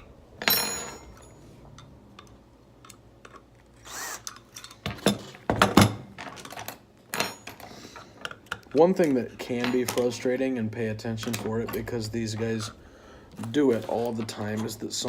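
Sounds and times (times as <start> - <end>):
metal parts clicking and clanking: 0.0 - 10.3, 11.2 - 12.7.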